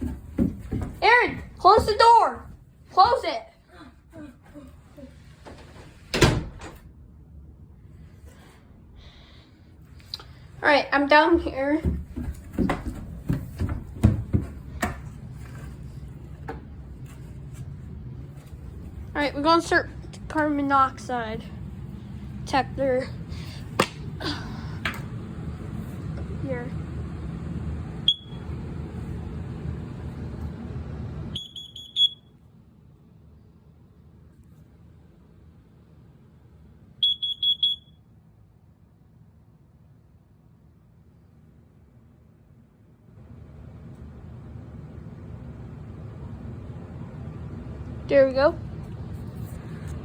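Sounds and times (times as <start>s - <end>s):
light knocks and thumps: 0.0s - 2.2s, 11.4s - 15.2s
steady low hum: 0.0s - 50.0s
high-pitched detector beeps: 28.1s - 28.4s, 31.4s - 32.3s, 37.0s - 38.0s.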